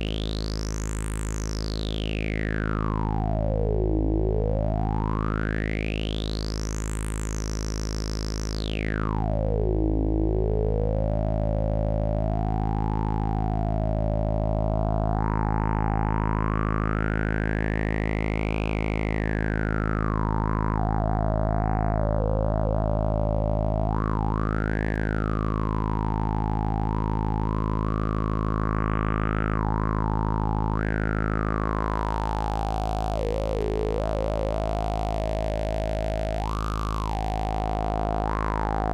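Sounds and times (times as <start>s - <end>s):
synthesizer drone with filter sweep: 0.0s - 38.9s.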